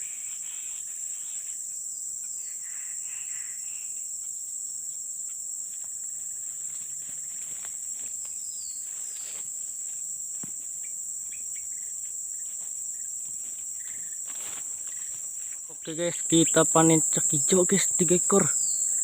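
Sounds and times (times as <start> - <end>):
forest insects droning: 0.0 - 19.0
faint rustles: 5.7 - 10.8, 12.0 - 15.8
bird chirps: 8.4 - 9.4, 17.9 - 19.0.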